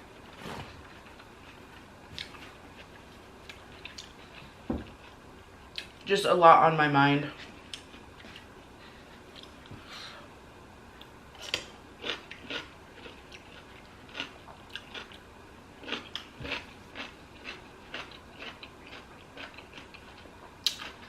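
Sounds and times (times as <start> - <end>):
crunchy chewing and biting: 11.5 - 21.0.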